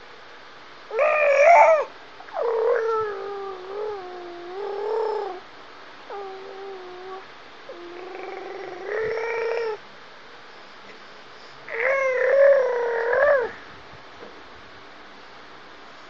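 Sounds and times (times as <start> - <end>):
baby gurgling and cooing: 11.7 - 13.6.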